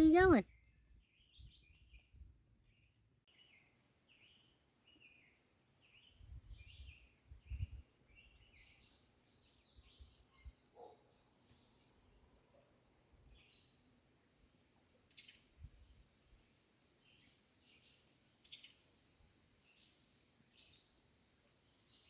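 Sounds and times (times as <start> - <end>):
faint bird chirping: 0.0 - 13.9, 14.9 - 16.1, 17.0 - 19.0.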